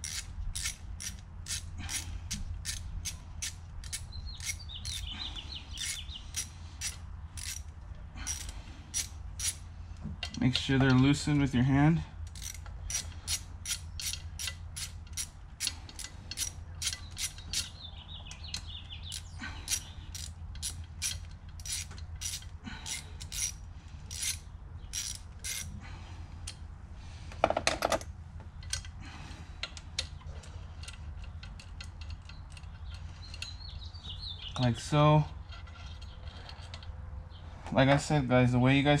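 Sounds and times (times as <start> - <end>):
ratchet wrench clicking: 0.0 - 5.1, 5.8 - 7.7, 8.3 - 9.6, 12.2 - 17.8, 18.5 - 25.7
steady low hum: 0.0 - 39.0.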